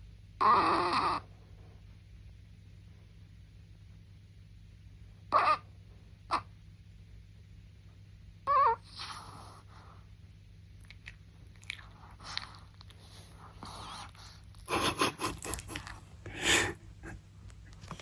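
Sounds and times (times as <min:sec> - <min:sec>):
dog snoring: 0:00.4 - 0:01.3.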